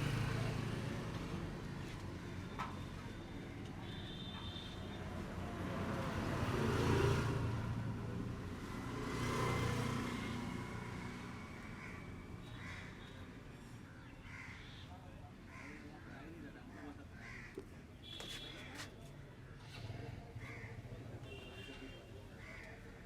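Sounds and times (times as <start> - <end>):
road traffic passing: 0.0 - 15.5.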